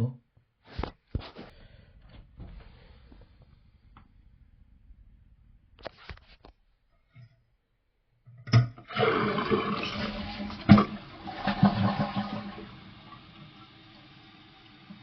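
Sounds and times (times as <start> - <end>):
toilet flush water rushing: 8.8 - 15.0.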